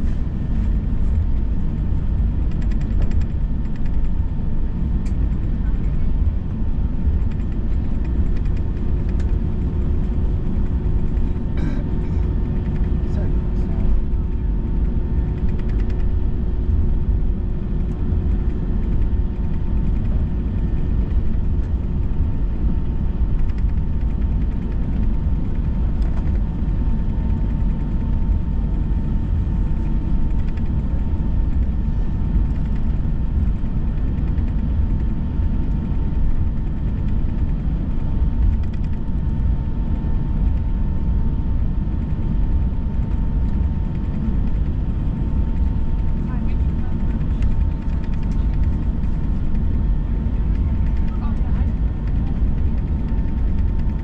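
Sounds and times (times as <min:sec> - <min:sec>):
airliner cabin rumble: 0:00.0 - 0:54.0
jet engine whine: 0:00.0 - 0:54.0.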